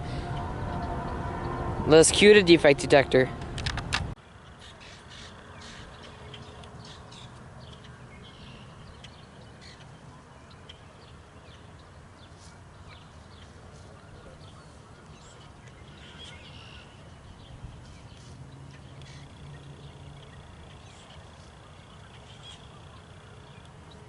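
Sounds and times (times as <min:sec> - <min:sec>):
low background rumble: 0:00.0 - 0:04.2
birds chirping and calling: 0:04.3 - 0:24.0
harsh bird calls: 0:04.4 - 0:24.0.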